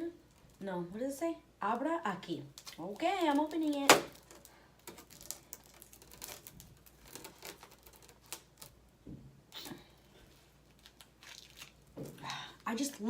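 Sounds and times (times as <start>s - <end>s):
plastic wrapper crinkling: 2.4s - 9.0s, 9.6s - 13.0s.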